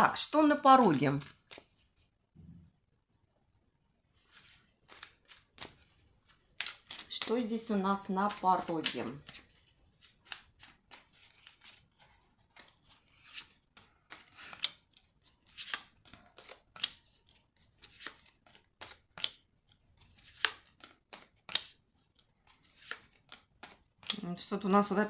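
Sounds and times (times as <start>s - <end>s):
cards snapping and slapping: 1.2s - 1.8s, 4.3s - 7.6s, 8.3s - 11.8s, 12.5s - 24.2s.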